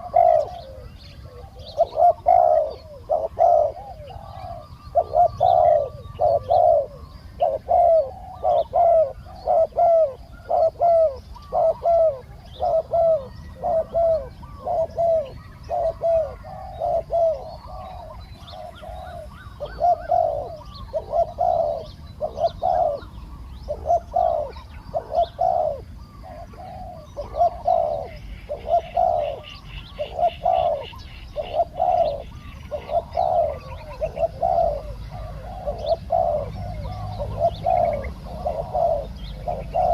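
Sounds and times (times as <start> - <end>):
doves cooing: 0.0 - 39.9
small birds chirping: 0.0 - 39.9.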